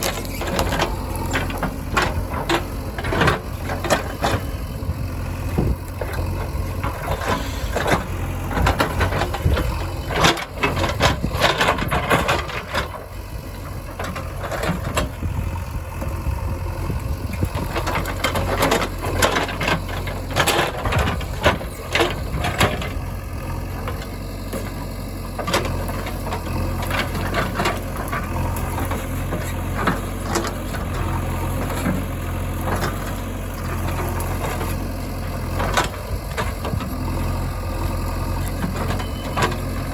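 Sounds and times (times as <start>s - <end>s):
diesel machinery engine running: 0.0s - 39.9s
metallic clanks and rattles: 5.6s - 13.0s, 17.3s - 23.0s.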